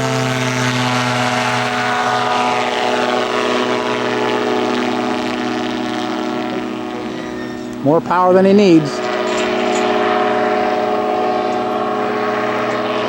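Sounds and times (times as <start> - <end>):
model aircraft engine flyby: 0.0 - 13.0.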